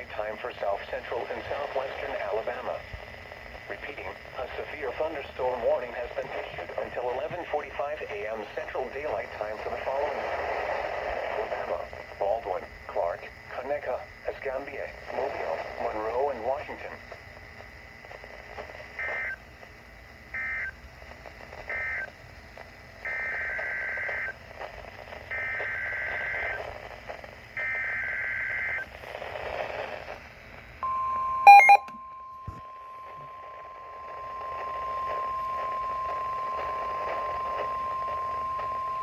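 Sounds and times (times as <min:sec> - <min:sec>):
faint radio hiss: 0:00.0 - 0:39.0
single-pitch alert tone: 0:30.8 - 0:33.8
two-tone digital data bursts: 0:31.5 - 0:31.9.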